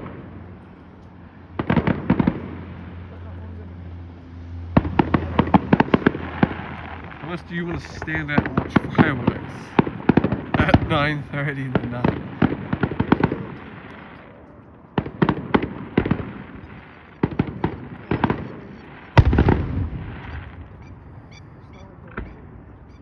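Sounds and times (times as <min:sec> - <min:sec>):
fireworks crackling bangs: 0:00.0 - 0:03.3, 0:04.6 - 0:21.3
firework boom with rumbling tail: 0:04.8 - 0:13.9, 0:15.0 - 0:21.3
faint firework pops: 0:12.0 - 0:20.8.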